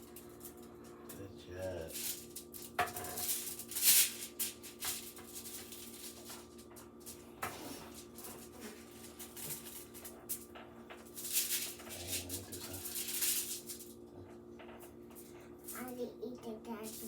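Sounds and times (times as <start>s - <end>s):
aluminium foil crinkling: 0.0s - 0.7s, 1.6s - 14.0s.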